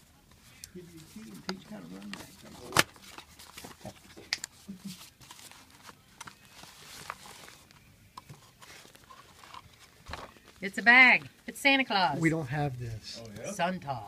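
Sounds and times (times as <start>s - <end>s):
packaging clicks and rustles: 1.4s - 11.1s.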